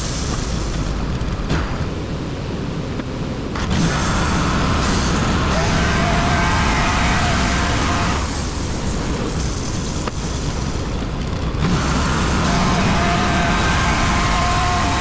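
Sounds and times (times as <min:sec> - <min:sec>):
band sawmill sawing a log: 0:11.6 - 0:15.0.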